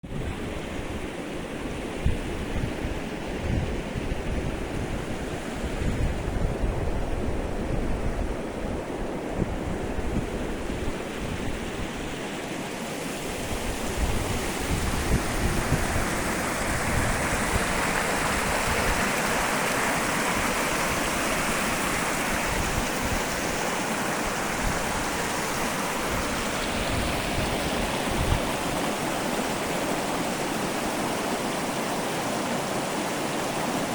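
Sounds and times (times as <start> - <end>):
wind buffeting microphone: 0.0 - 33.9
running water rushing: 8.2 - 33.9.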